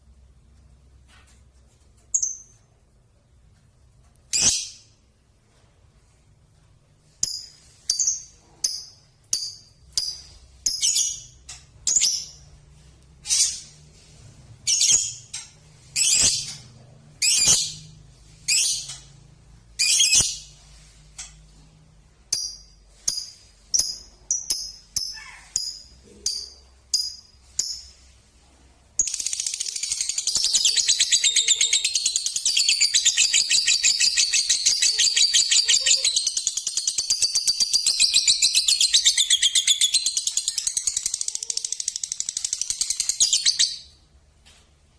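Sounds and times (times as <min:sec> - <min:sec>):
lovebird chirping and chattering: 0:04.3 - 0:04.8, 0:07.2 - 0:12.6, 0:14.6 - 0:19.1, 0:19.8 - 0:20.6, 0:22.3 - 0:28.1, 0:29.0 - 0:44.0.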